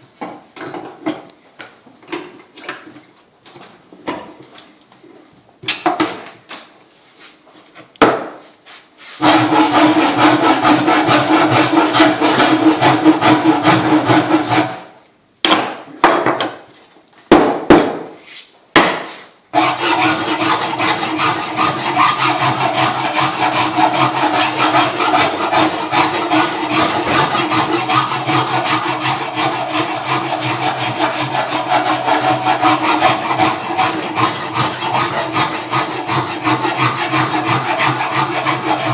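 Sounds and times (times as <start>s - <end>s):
abrasive tool scraping wood: 8.7s - 14.9s, 18.1s - 38.9s.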